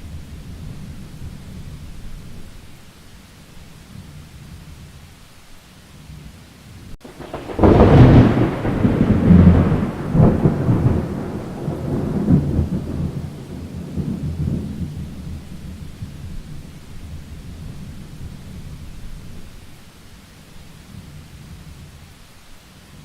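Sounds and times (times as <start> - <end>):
rain hissing: 0.0 - 23.0
thunder rumbling: 7.0 - 19.8.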